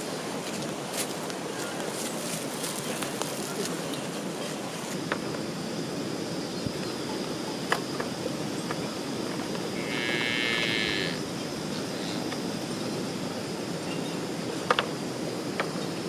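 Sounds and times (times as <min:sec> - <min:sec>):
cow mooing: 0:09.8 - 0:11.2.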